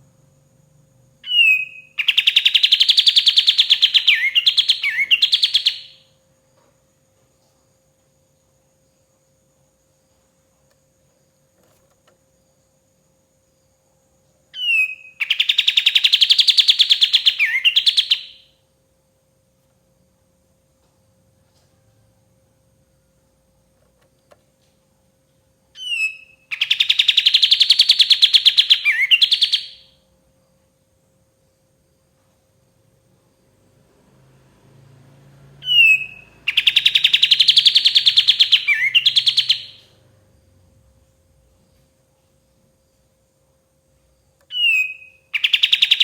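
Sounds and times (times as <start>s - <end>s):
songbird whistle and trill: 1.2s - 6.2s, 14.6s - 18.6s, 25.8s - 30.0s, 35.6s - 40.0s, 44.5s - 46.0s.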